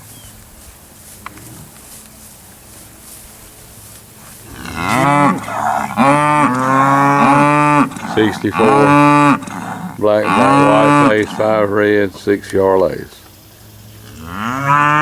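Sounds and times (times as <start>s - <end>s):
cattle mooing: 4.4s - 12.4s, 14.1s - 15.0s.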